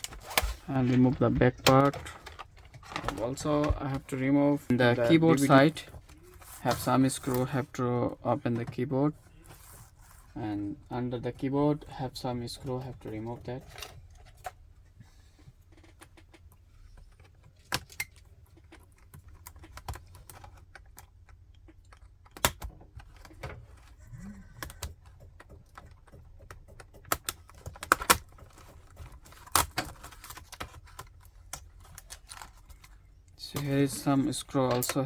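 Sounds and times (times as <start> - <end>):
laptop parts clicking and clattering: 0.0 - 4.3, 15.6 - 35.0.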